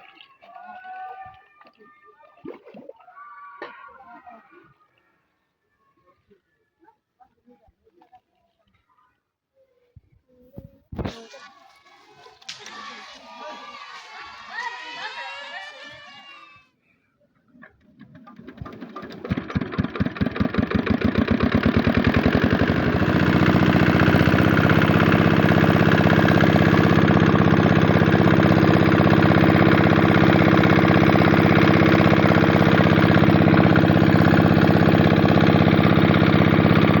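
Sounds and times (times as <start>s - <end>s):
water pump engine running: 11.1s - 16.6s, 18.1s - 37.0s.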